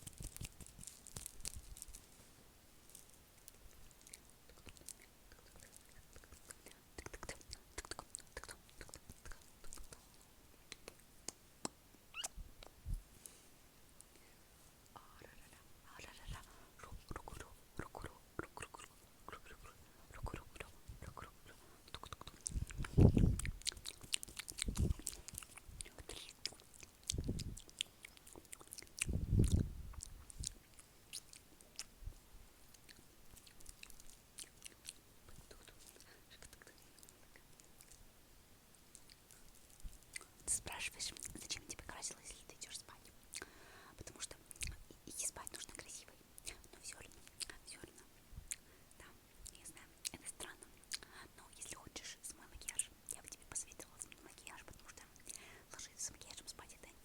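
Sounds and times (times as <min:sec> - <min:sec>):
wet mouth clicks and smacks: 0:03.8 - 0:10.0, 0:10.7 - 0:12.8, 0:20.2 - 0:31.9, 0:32.7 - 0:38.0.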